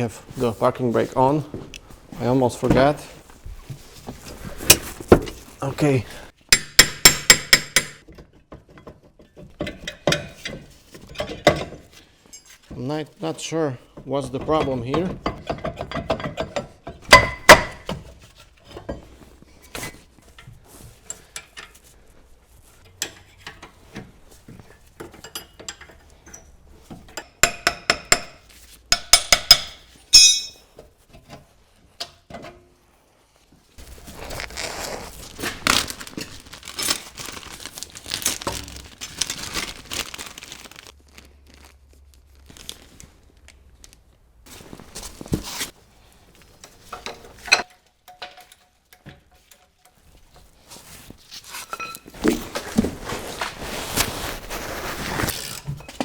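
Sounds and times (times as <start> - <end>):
tools and brake parts clinking: 6.6 - 12.7, 19.9 - 21.9, 24.8 - 28.4, 29.0 - 31.3, 51.6 - 52.2
rough scraping: 33.8 - 40.8, 52.5 - 55.7.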